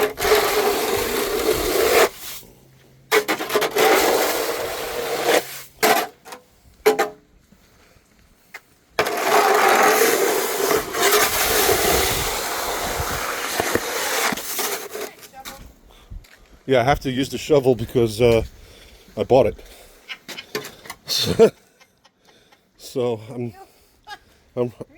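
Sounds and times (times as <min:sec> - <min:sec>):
snow shovel scraping: 0:00.0 - 0:07.0, 0:09.0 - 0:15.5.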